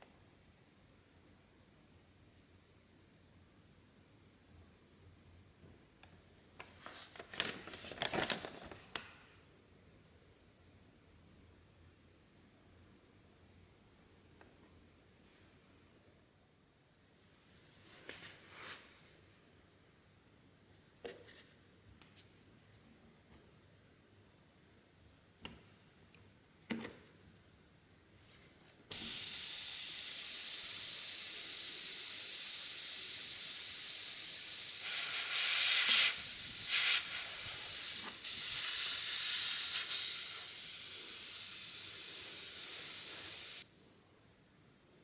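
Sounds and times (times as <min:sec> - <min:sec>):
pressurised air hissing: 0:28.9 - 0:43.8.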